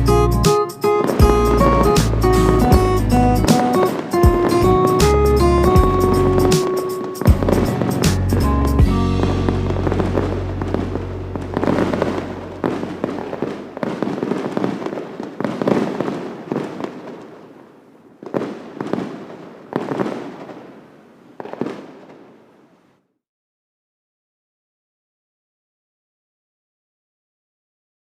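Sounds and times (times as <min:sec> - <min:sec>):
aerial fireworks bursting: 0:00.4 - 0:17.6, 0:18.2 - 0:22.5.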